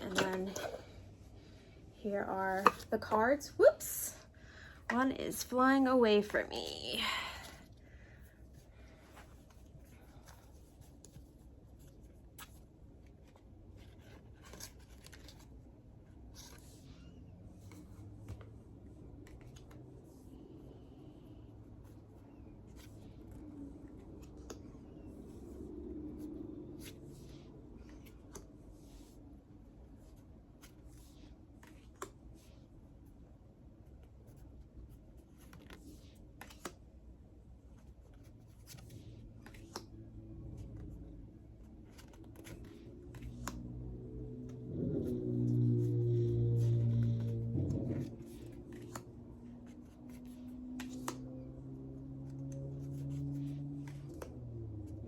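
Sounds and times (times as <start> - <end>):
cards rustling and clicking: 8.6 - 20.1, 21.5 - 25.4, 26.2 - 29.1, 29.9 - 32.6, 33.8 - 55.0
low rumble from outside: 39.0 - 55.0.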